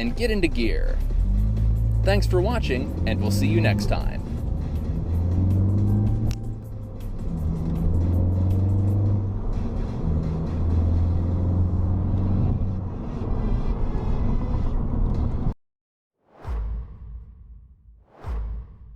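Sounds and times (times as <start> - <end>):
music with heavy bass: 0.0 - 11.6.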